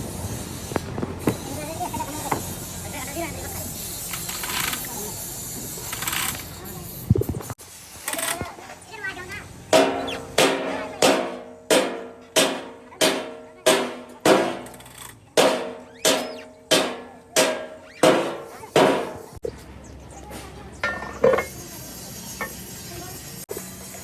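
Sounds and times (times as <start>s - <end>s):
hammer striking metal: 9.8s - 19.4s.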